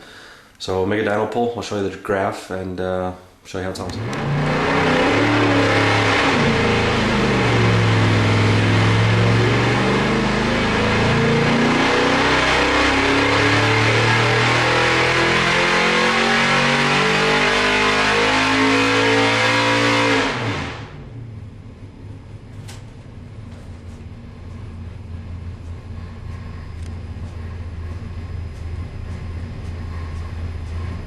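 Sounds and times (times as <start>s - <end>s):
race engine revving at full throttle: 3.8s - 21.3s
low hum: 3.8s - 31.0s.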